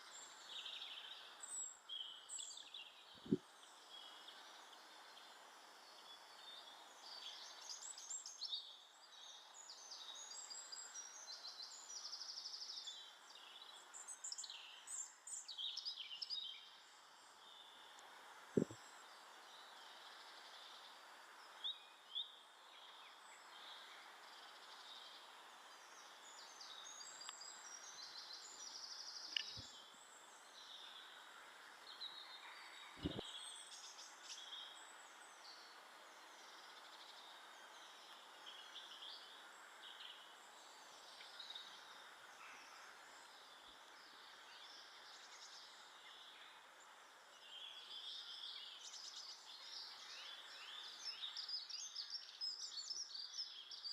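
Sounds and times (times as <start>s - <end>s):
steady background hiss: 0.0s - 53.9s.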